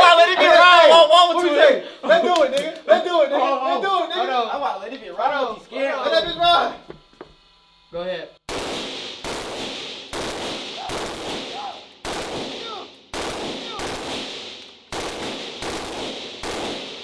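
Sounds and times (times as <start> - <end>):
gunshots echoing indoors: 8.5 - 17.0.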